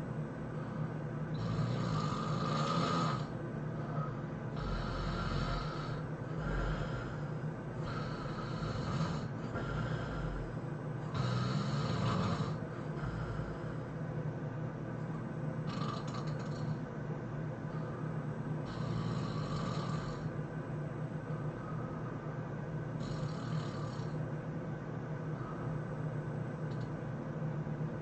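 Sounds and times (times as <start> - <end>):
person snoring: 1.3 - 13.9, 15.6 - 16.8, 18.6 - 20.3, 23.0 - 24.2.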